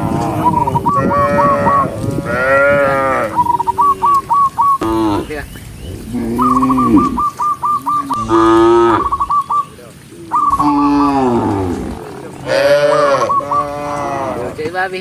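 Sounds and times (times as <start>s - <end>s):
cows mooing: 0.0s - 9.4s, 10.4s - 15.0s
high repeated chirps: 3.4s - 10.8s, 13.0s - 13.8s.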